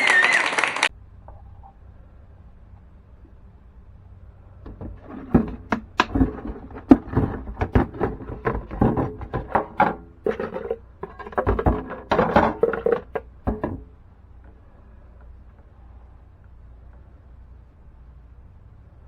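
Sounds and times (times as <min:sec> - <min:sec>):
faint low hum: 0:00.9 - 0:19.0
objects clicking and rattling: 0:04.6 - 0:14.6.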